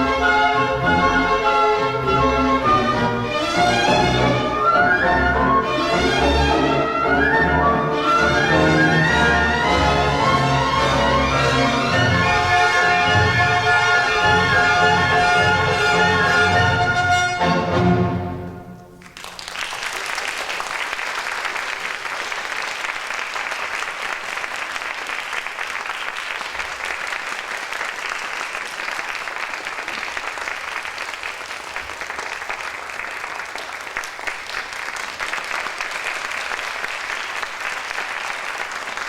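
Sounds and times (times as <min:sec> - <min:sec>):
orchestral chord: 0:00.0 - 0:19.0
audience applauding: 0:18.9 - 0:39.0.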